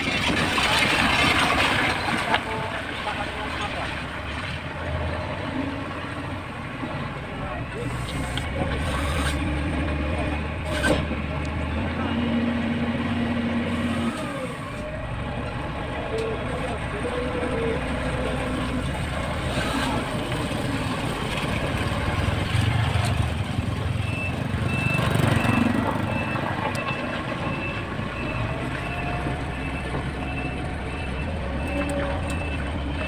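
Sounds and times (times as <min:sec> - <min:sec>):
diesel engine under load: 0:00.0 - 0:33.0
reversing alarm beeping: 0:24.0 - 0:33.0.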